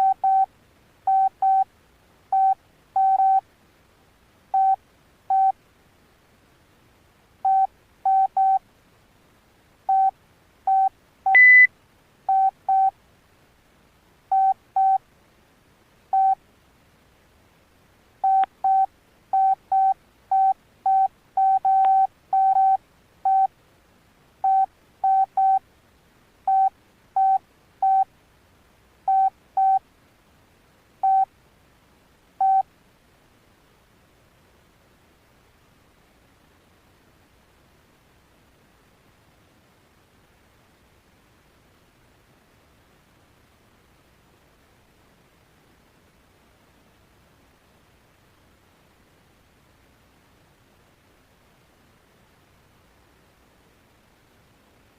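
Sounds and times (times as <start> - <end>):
phone keypad beeps: 0.0 - 0.5, 1.1 - 1.7, 2.3 - 3.4, 4.6 - 5.6, 7.4 - 8.6, 9.9 - 10.1, 10.7 - 11.7, 12.3 - 12.9, 14.3 - 15.0, 16.1 - 16.4, 18.2 - 23.5, 24.4 - 25.6, 26.5 - 28.1, 29.1 - 29.8, 31.0 - 31.3, 32.4 - 32.6.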